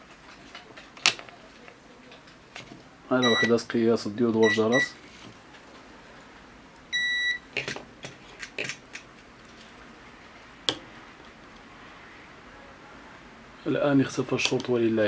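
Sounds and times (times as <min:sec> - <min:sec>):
multimeter beep: 0:03.2 - 0:03.6, 0:04.4 - 0:05.0, 0:06.9 - 0:07.5
probe tips clicking and scraping: 0:07.6 - 0:09.8.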